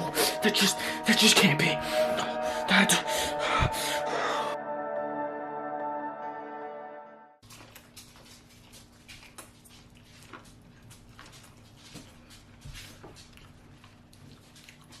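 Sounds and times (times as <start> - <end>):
chewing corn on the cob: 7.4 - 15.0.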